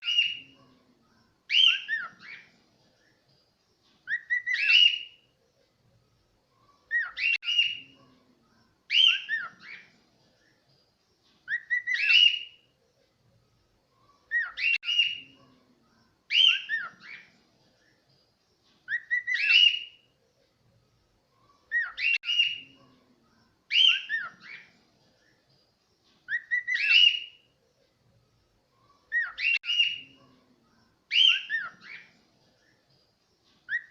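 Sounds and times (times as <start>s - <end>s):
cockatiel whistling a tune: 1.5s - 2.4s, 16.3s - 17.2s, 18.9s - 19.9s, 23.7s - 24.6s, 26.3s - 27.3s, 31.1s - 32.0s.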